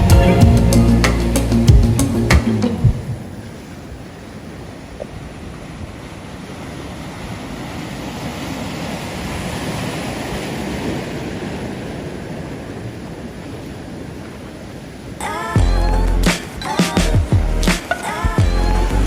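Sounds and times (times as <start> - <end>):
ocean surf breaking: 0.0 - 18.5.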